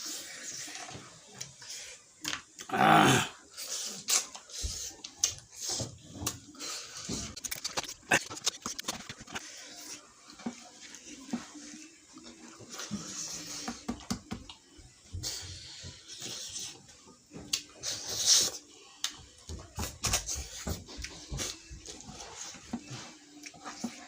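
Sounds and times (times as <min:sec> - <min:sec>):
chewing: 0:20.2 - 0:24.0.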